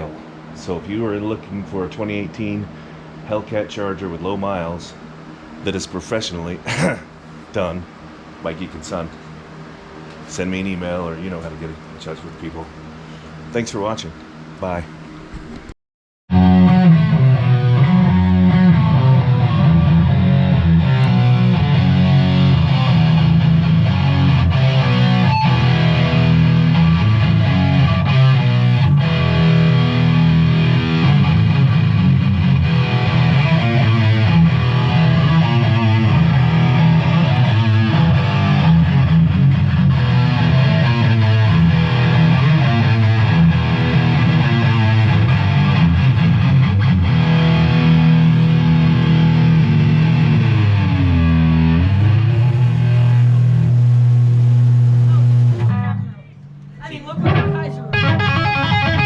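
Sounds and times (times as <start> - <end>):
rock music with distorted guitar: 16.3 - 56.0, 57.2 - 59.0.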